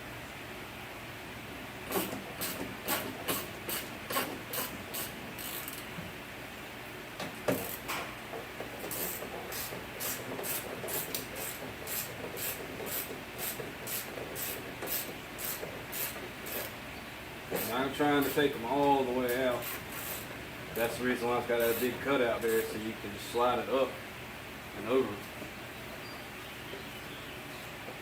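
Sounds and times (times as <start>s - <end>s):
ratchet wrench clicking: 4.5s - 5.9s.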